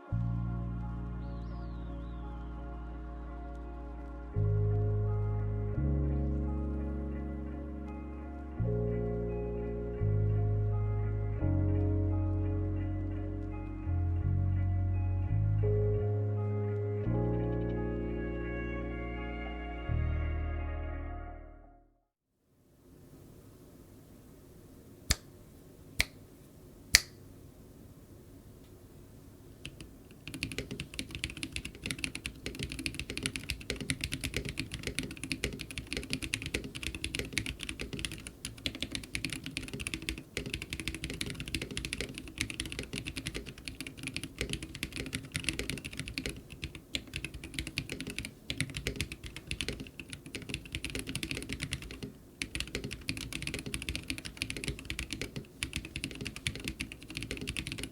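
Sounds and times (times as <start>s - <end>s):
sharp single clicks: 26.9s - 27.2s
fast typing on mechanical keyboard: 29.6s - 57.9s.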